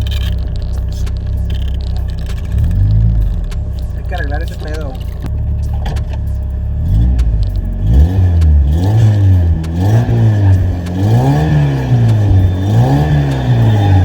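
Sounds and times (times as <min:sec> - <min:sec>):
car engine revving: 0:00.0 - 0:14.0
man talking: 0:03.8 - 0:06.6.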